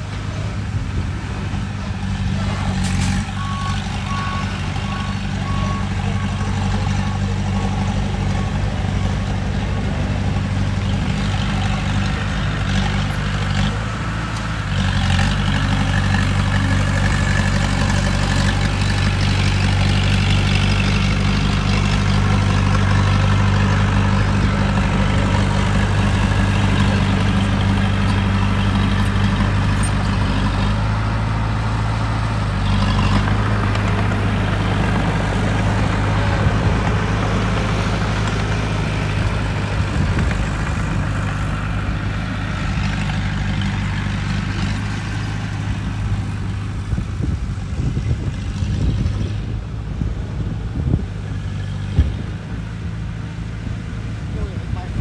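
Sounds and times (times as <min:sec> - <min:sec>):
diesel machinery engine: 0:00.0 - 0:55.0
reversing alarm beeping: 0:03.3 - 0:07.7.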